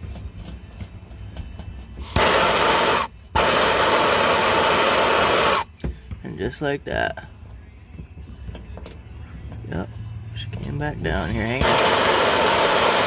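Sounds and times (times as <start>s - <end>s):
torch flame hissing: 2.0s - 5.7s, 11.2s - 13.0s.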